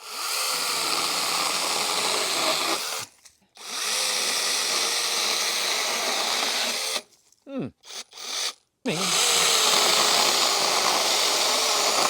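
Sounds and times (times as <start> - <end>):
mini chainsaw whining: 7.8 - 12.0.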